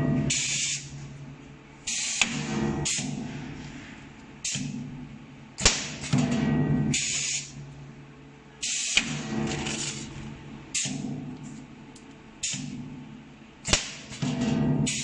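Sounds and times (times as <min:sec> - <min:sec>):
air hiss bursts: 0:00.3 - 0:00.9, 0:01.9 - 0:02.3, 0:07.0 - 0:07.5
sharp cracks of weld discharges: 0:00.3 - 0:00.9, 0:01.9 - 0:03.3, 0:04.4 - 0:04.8, 0:05.6 - 0:07.6, 0:08.6 - 0:11.2, 0:12.4 - 0:12.8, 0:13.6 - 0:15.0.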